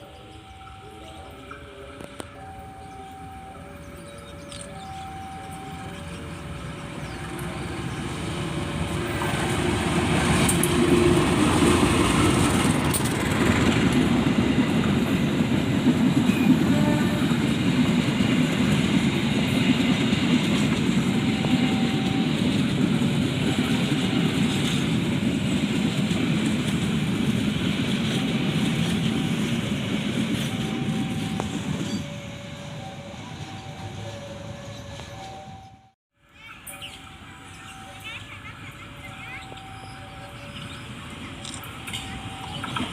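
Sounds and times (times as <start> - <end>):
two-note warning signal: 0.0 - 7.8, 21.1 - 22.5, 30.4 - 36.0
train passing rumble: 0.0 - 42.9.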